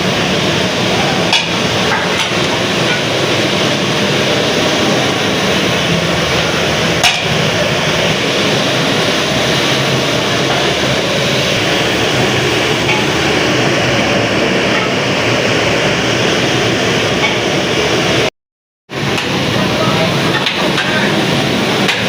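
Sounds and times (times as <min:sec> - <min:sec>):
traffic and street noise: 0:00.0 - 0:18.3, 0:18.9 - 0:22.0.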